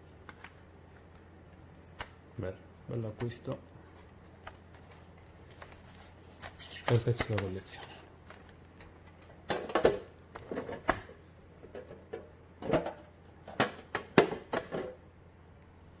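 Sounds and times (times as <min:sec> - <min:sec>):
paper and cardboard rustling: 0:03.2 - 0:09.4.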